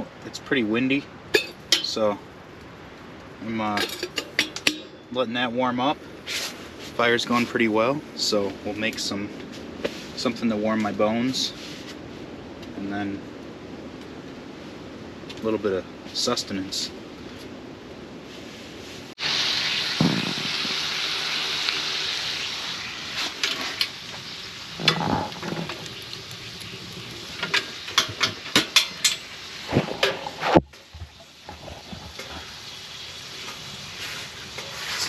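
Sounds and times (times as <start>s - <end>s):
sausage sizzling in a pan: 19.2s - 29.7s, 31.1s - 35.0s.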